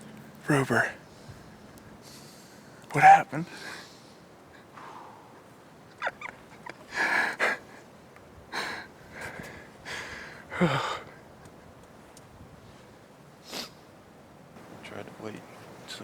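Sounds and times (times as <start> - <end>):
man breathing hard: 3.5 - 5.5, 6.9 - 7.8, 8.5 - 11.1
man sighing: 10.5 - 11.0.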